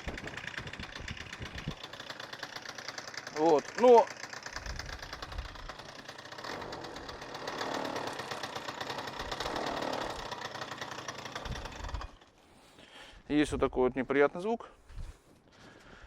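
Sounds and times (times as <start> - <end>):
engine rattling knock: 0.0 - 12.2
engine revving: 0.0 - 12.2.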